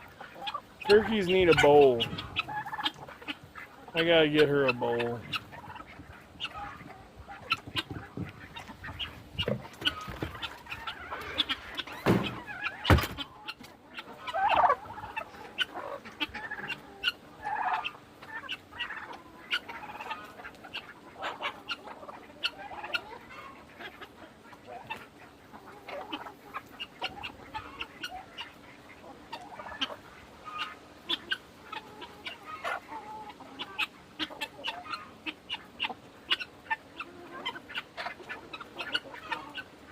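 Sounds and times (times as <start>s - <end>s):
chickens clucking: 0.0s - 39.9s
loud knocks: 12.0s - 13.2s.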